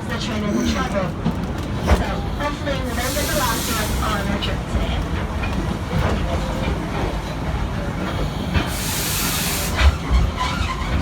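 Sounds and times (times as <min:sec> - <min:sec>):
train rumbling on track: 0:00.0 - 0:11.0
burst of hiss: 0:02.9 - 0:04.3, 0:08.7 - 0:09.9.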